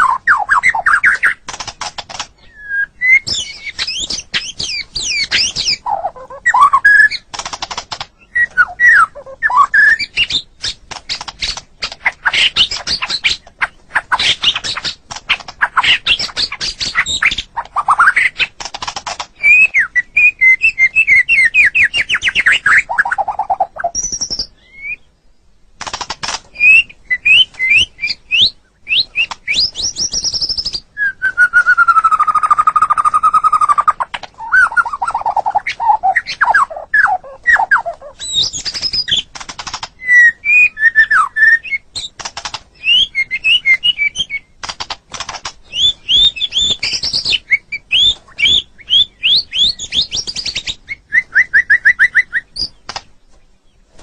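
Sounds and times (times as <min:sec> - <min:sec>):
bird singing whistled phrases: 0:00.0 - 0:01.4, 0:02.4 - 0:07.2, 0:08.2 - 0:10.5, 0:19.4 - 0:25.1, 0:26.6 - 0:39.3, 0:40.0 - 0:42.0, 0:42.8 - 0:44.5, 0:45.7 - 0:52.8.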